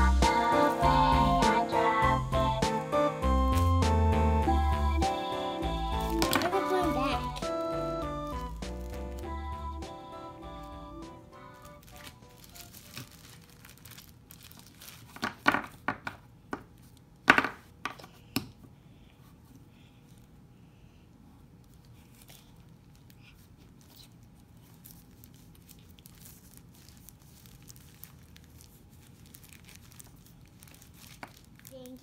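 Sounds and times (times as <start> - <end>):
packaging crinkling and tearing: 5.8 - 15.8, 21.6 - 32.0.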